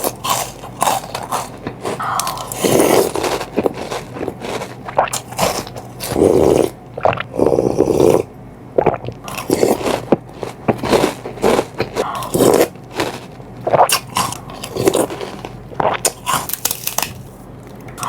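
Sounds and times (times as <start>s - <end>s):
crunching and chewing cereal: 0.0s - 8.3s, 9.1s - 18.0s.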